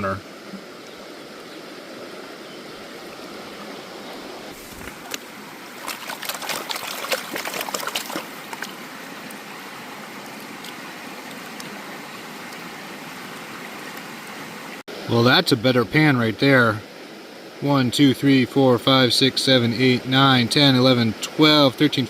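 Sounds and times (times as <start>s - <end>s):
stream water running: 0.0s - 22.0s
gold pan splashing and clicking: 4.7s - 8.8s.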